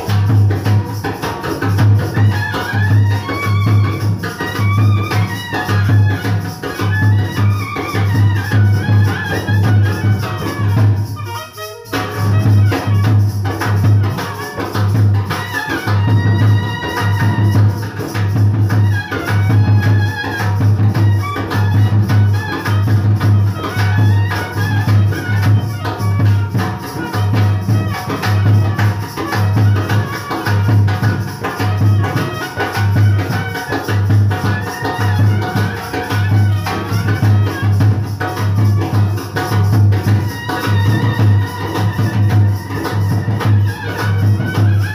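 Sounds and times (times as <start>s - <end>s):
fast shaker percussion: 0.0s - 44.9s.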